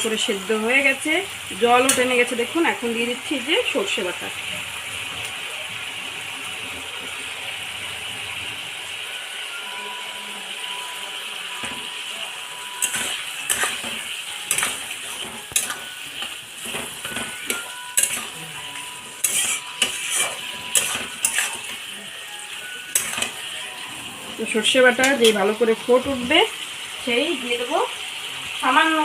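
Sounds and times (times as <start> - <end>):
pan sizzling: 0.0 - 29.0
spatula scraping a pan: 12.8 - 22.3, 22.9 - 25.6.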